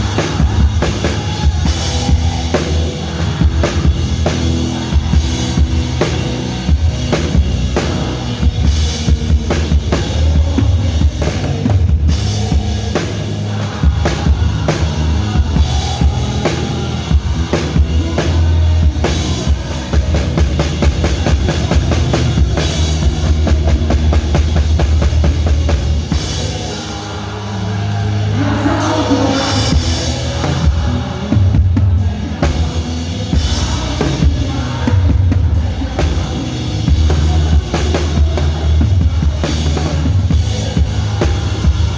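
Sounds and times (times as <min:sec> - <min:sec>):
heavy bass: 0:00.0 - 0:41.9
live band music: 0:00.0 - 0:41.9.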